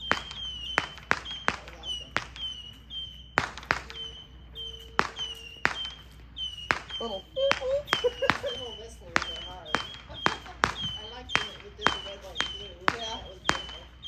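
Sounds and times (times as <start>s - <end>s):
firework bangs: 0.0s - 14.0s
fireworks whistling shots: 0.0s - 14.0s.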